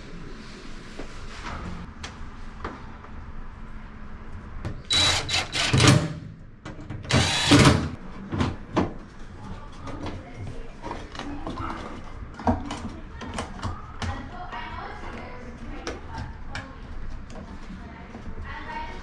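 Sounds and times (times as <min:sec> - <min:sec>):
power drill whining: 0:04.9 - 0:06.1, 0:07.1 - 0:08.0.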